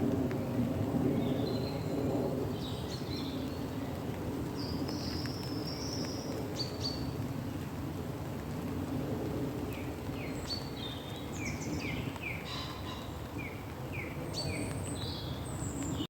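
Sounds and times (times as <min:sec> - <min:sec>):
small birds chirping: 0:09.7 - 0:16.0.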